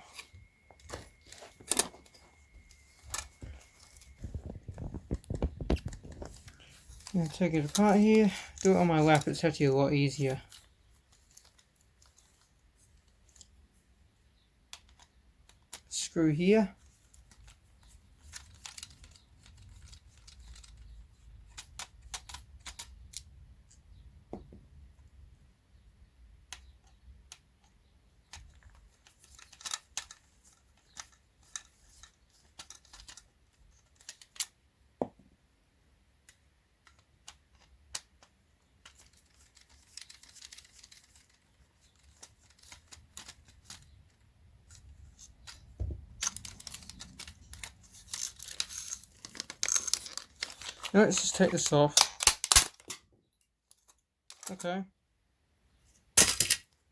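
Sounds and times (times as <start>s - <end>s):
screwdriver and parts clicking: 46.2s - 53.0s, 56.2s - 56.8s.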